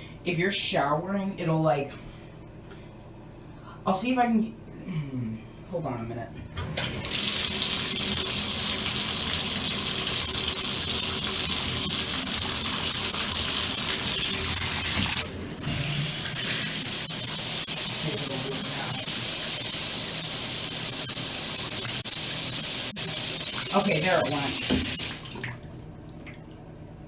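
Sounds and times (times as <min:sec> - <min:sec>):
faucet running into bathtub: 0:06.8 - 0:26.4.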